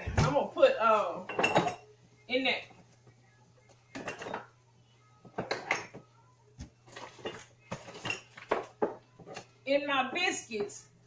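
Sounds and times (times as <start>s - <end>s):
utensils and dishes clinking: 1.0s - 1.9s, 3.9s - 4.6s, 5.2s - 6.1s, 6.8s - 10.8s.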